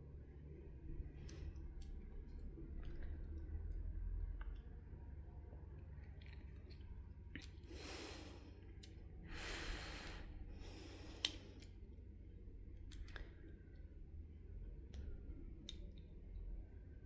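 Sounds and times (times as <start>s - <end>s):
breaths close to microphone: 9.3s - 11.6s
light switch parts clicking: 11.2s - 11.8s.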